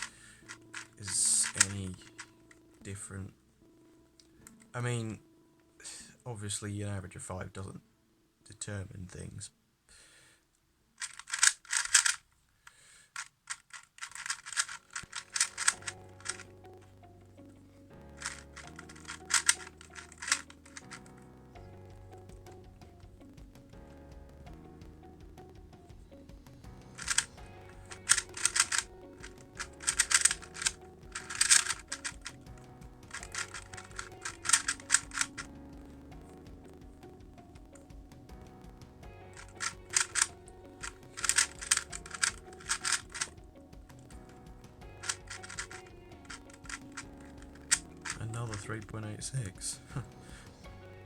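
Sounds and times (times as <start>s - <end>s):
speed cube clicking: 0.0s - 2.3s, 11.0s - 12.2s, 13.2s - 16.5s, 18.2s - 21.1s, 27.0s - 35.6s, 39.4s - 44.1s, 45.0s - 48.6s
background music: 0.0s - 51.0s.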